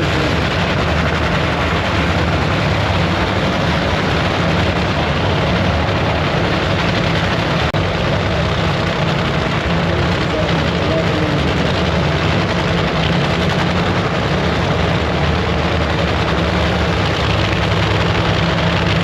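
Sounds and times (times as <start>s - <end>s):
drag racing engine roaring: 0.0s - 19.0s.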